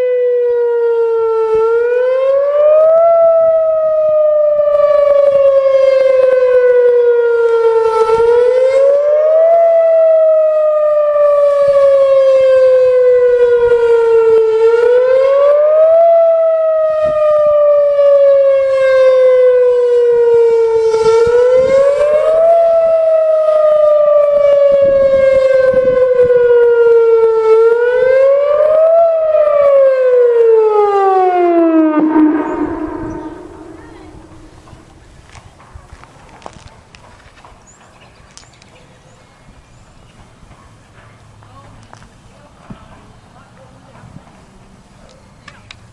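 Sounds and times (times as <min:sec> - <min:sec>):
tornado siren wailing: 0:00.0 - 0:35.6.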